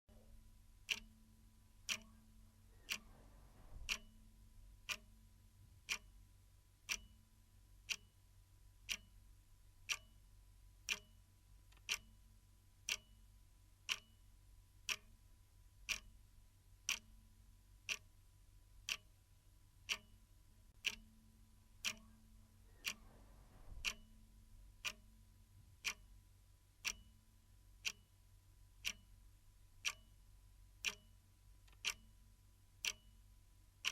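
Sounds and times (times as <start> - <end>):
clock ticking: 0.1 - 33.9.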